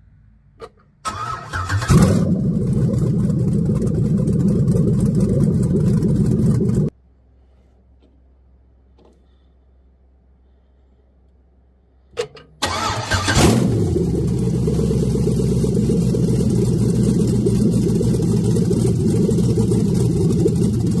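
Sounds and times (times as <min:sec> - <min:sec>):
engine cranking and starting: 0:01.0 - 0:06.9, 0:12.6 - 0:21.0
engine idling: 0:01.1 - 0:07.0, 0:12.6 - 0:21.0.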